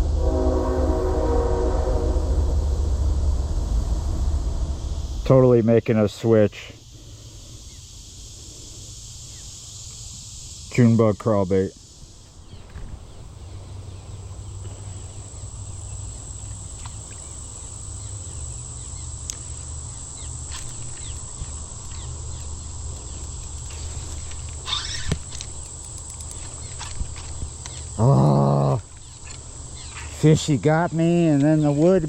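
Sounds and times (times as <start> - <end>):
low rumble: 0.0 - 7.2
insects buzzing: 0.0 - 32.0
scraping rustle: 20.4 - 28.0
faint bird chirps: 24.6 - 25.7.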